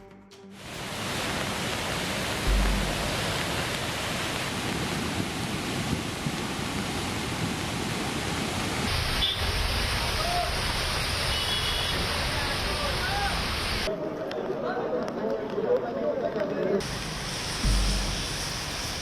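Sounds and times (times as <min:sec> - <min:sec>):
water rushing: 0:00.6 - 0:13.9, 0:16.8 - 0:19.0
low thump: 0:02.4 - 0:03.9, 0:17.6 - 0:19.0.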